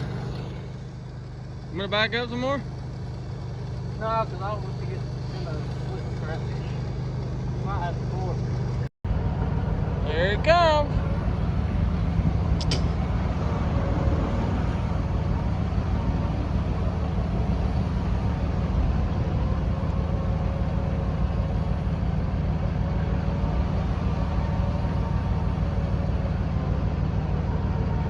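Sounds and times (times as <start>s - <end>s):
winch motor droning with whine: 0.0s - 28.0s
sharp click: 12.6s - 13.1s.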